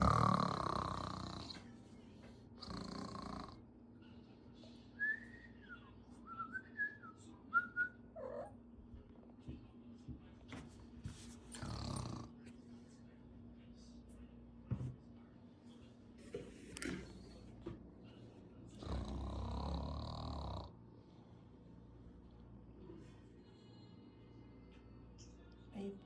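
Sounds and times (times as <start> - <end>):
person snoring: 0.0 - 1.6, 11.6 - 12.3, 18.8 - 20.7.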